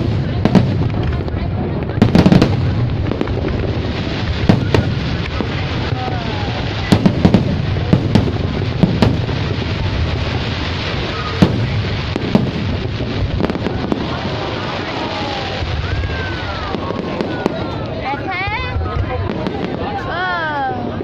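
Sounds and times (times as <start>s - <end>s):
fireworks shells bursting: 2.1s - 16.1s.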